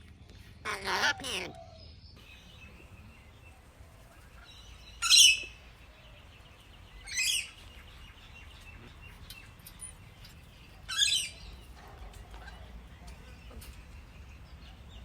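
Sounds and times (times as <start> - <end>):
parrot shrill calls: 0.7 - 1.6, 5.0 - 5.6, 7.0 - 7.6, 10.9 - 11.5
parrot soft chirping: 2.3 - 5.8, 6.9 - 9.5.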